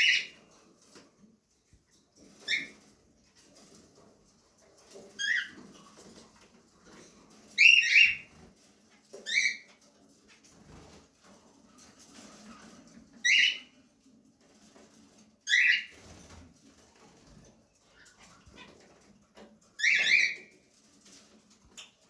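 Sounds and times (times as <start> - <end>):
finch calling: 0.0 - 0.4, 7.6 - 8.3, 19.8 - 20.5.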